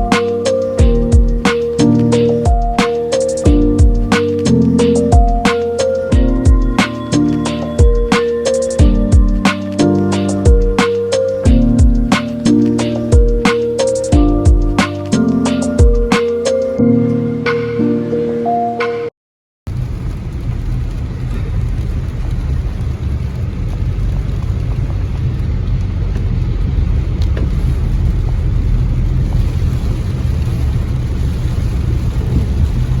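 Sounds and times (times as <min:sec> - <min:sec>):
background music: 0:00.0 - 0:19.1
wind rumbling on microphone: 0:19.7 - 0:33.0.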